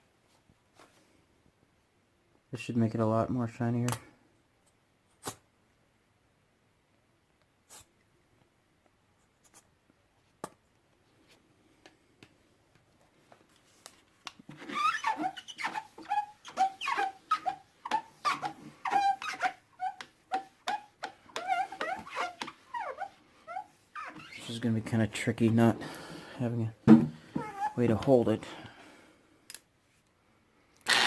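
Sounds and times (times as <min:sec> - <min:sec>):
polishing pad squeaking on plastic: 0:14.5 - 0:24.6, 0:27.4 - 0:27.8.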